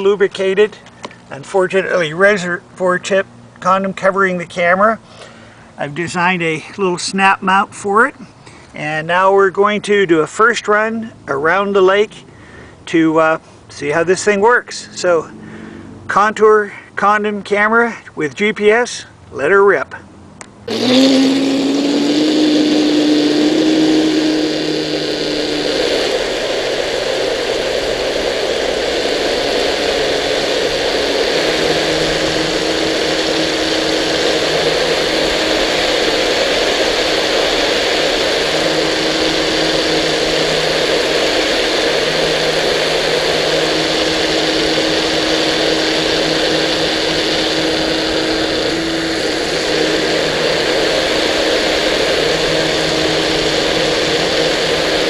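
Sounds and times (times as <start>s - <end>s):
electric motor and propeller whine: 20.7s - 55.0s
water rushing and spray: 20.7s - 55.0s.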